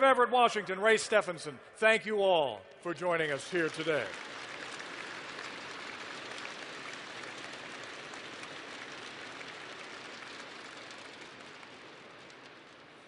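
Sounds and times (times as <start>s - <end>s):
audience applauding: 3.2s - 13.0s.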